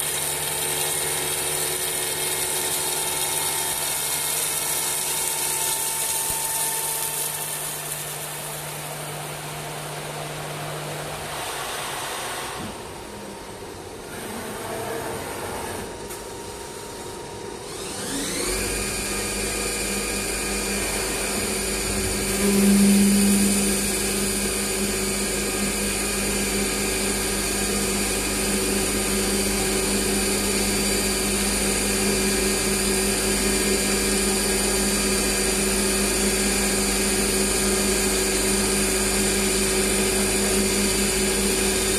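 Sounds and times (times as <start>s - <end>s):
wood turning machine motor whine: 17.5s - 41.9s.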